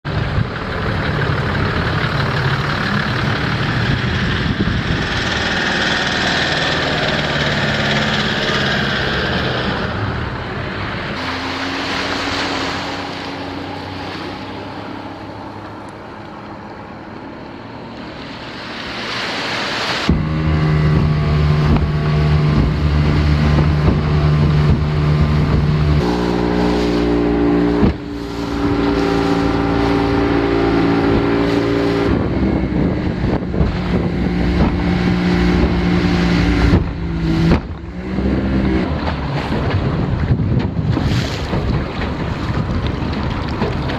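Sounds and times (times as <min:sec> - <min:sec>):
boat motor running: 0:00.0 - 0:43.9
water rushing past: 0:00.1 - 0:43.9
wind rushing: 0:03.6 - 0:14.0, 0:18.8 - 0:43.6.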